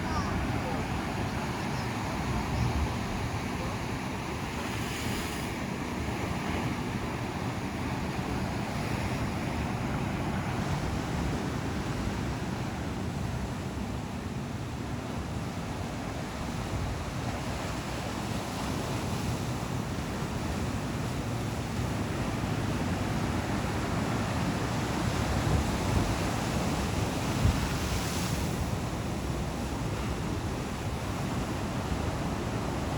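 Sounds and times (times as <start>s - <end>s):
ocean surf washing ashore: 0.0s - 32.9s
wind on microphone: 22.0s - 32.9s.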